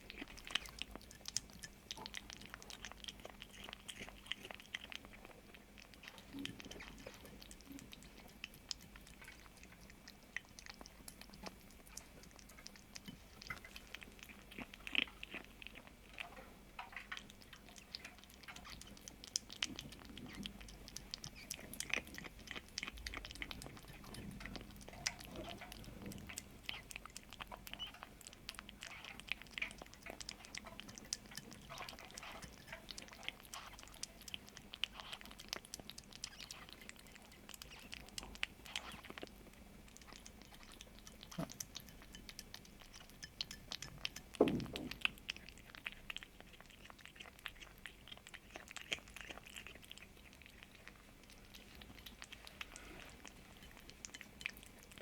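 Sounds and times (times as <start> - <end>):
kitten crunchy chewing: 0.0 - 55.0
low thud: 44.4 - 45.0.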